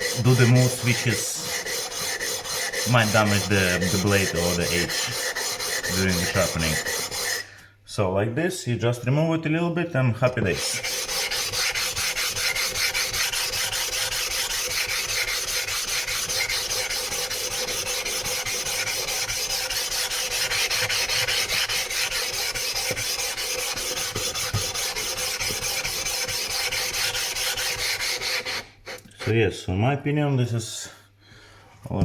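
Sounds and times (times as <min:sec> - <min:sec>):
stone scraping on wet whetstone: 0:00.0 - 0:07.4, 0:10.5 - 0:28.7.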